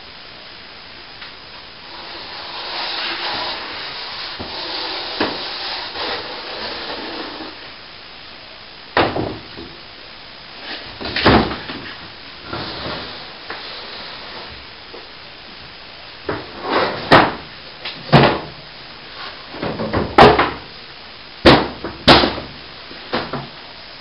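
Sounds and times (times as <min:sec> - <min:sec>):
plasterboard debris scraping: 0:01.9 - 0:07.7, 0:10.6 - 0:14.6
loud knocks: 0:09.0 - 0:09.8, 0:19.6 - 0:20.6, 0:21.4 - 0:22.5.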